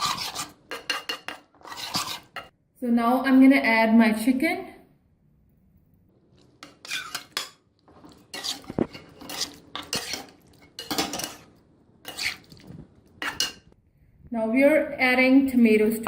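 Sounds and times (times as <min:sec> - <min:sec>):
metal utensil clattering on pan: 0:00.0 - 0:02.5, 0:06.6 - 0:11.5.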